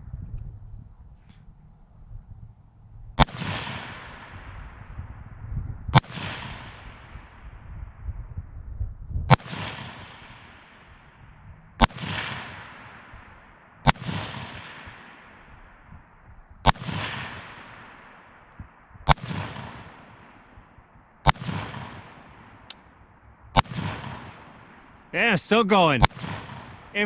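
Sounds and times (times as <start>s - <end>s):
rifle shots echoing: 13.9s - 15.4s, 21.3s - 22.7s, 25.8s - 27.0s.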